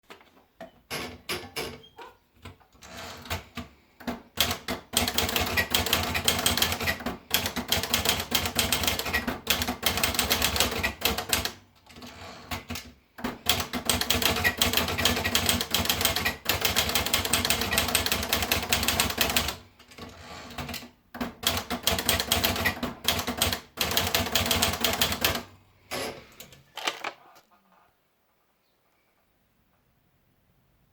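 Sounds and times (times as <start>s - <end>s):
manual typewriter keystrokes: 2.8s - 25.5s.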